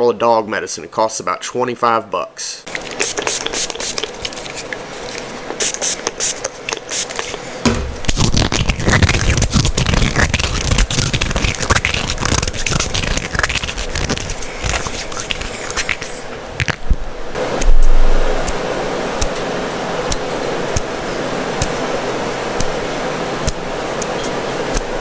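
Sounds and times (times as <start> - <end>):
hands scraping rough material: 2.8 - 16.8.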